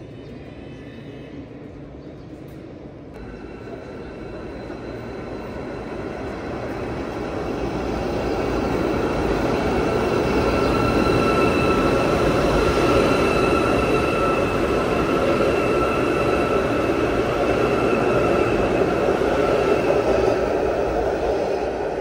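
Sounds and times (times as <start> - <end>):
train rumbling on rails: 0.0 - 22.0
faint high whine: 3.2 - 19.5.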